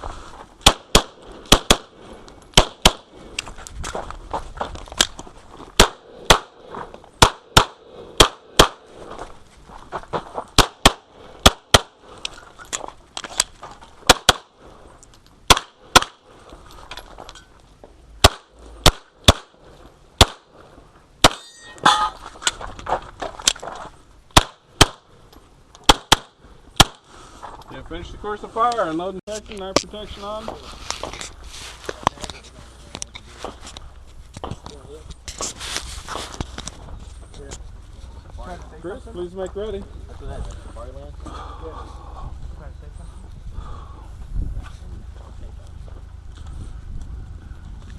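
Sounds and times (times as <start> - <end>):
pistol shots: 0.6 - 3.1, 5.8 - 6.6, 7.2 - 8.8, 10.6 - 12.0, 14.1 - 14.5, 15.5 - 16.2, 18.2 - 19.5, 20.2 - 20.5, 25.8 - 27.0.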